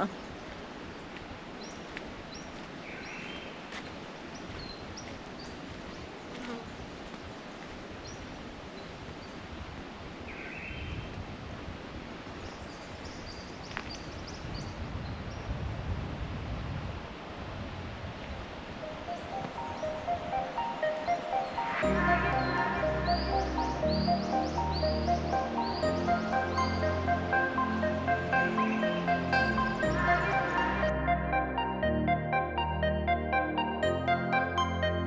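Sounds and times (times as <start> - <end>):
high bird chirps: 18.8 - 30.9.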